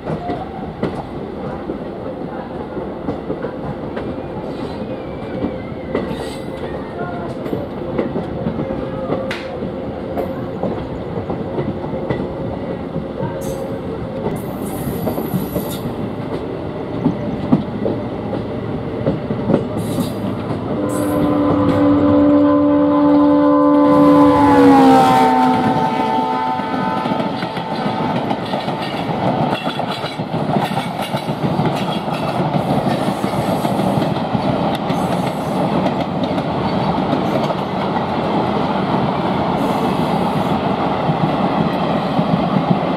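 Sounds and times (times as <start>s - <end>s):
train rumble: 0.0s - 42.9s
locomotive horn: 20.4s - 28.4s.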